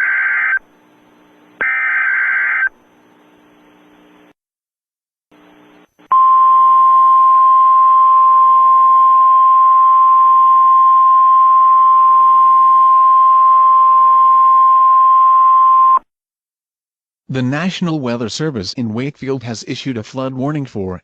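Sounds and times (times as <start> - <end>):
faint radio static: 0.0 - 4.3, 5.3 - 6.1.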